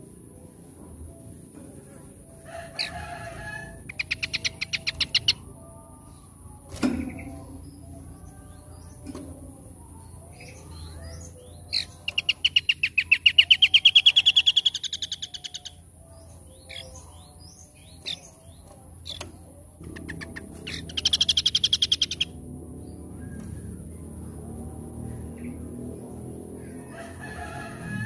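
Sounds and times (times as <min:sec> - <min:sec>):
songbird trilling: 0:03.8 - 0:05.4, 0:10.8 - 0:15.8, 0:19.9 - 0:22.4.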